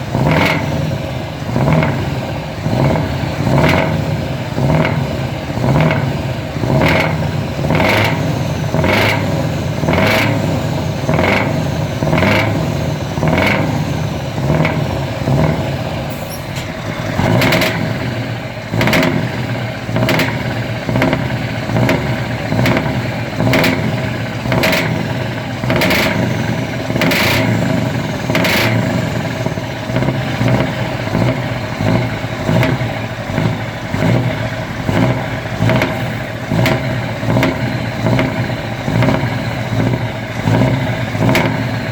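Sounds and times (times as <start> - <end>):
truck engine rumbling: 0.0 - 41.9.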